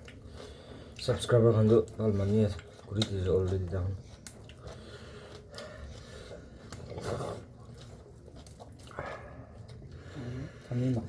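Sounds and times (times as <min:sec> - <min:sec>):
chewing: 0:00.0 - 0:11.0
breathing: 0:00.2 - 0:01.0, 0:04.6 - 0:06.7, 0:08.9 - 0:10.8.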